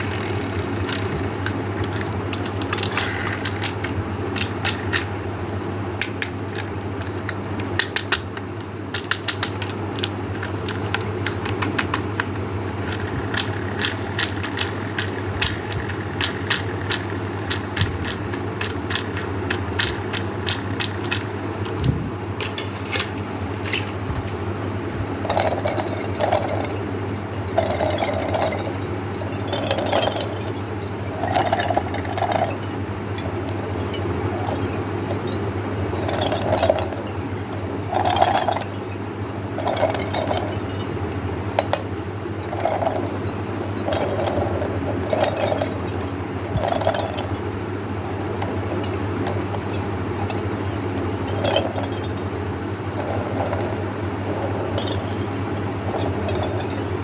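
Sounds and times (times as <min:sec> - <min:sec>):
hard candies rattling in container: 0:00.0 - 0:05.1, 0:12.8 - 0:21.3
steady low hum: 0:00.0 - 0:57.0.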